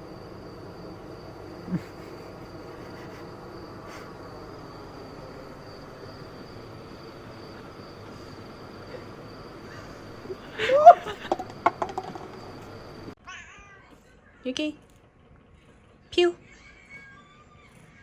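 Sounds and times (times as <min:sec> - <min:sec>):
thin high whine: 0:00.0 - 0:13.2
faint background hum: 0:00.0 - 0:18.0.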